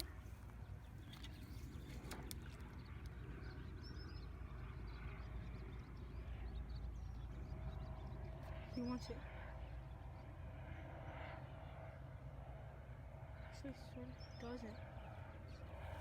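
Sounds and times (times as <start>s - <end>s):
bird chirping: 0.0s - 10.4s
outdoor ambience rumble: 0.0s - 16.0s.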